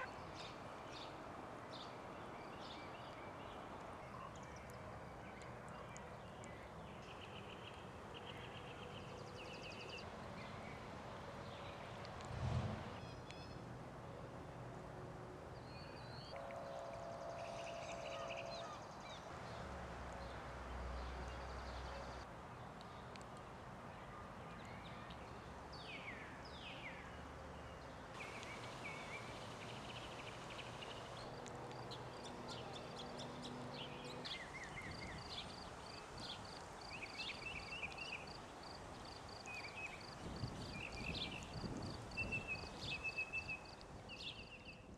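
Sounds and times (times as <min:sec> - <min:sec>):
steady background noise: 0:00.0 - 0:44.0
songbirds chirping: 0:00.0 - 0:44.9.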